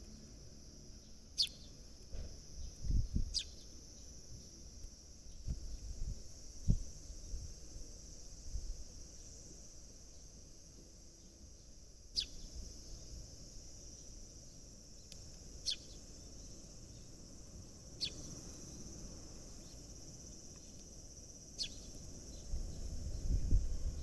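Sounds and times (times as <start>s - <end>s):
high-pitched insect trill: 0.0s - 24.0s
sparrows chirping: 0.9s - 1.9s, 2.6s - 4.6s, 11.1s - 13.0s, 14.0s - 17.2s, 17.9s - 19.0s, 21.5s - 23.4s.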